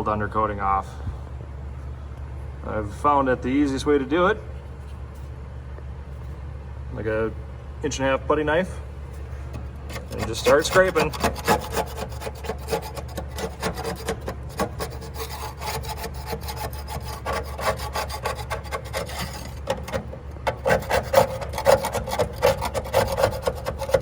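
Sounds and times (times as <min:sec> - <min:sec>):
putty knife scraping metal: 0:09.3 - 0:24.0.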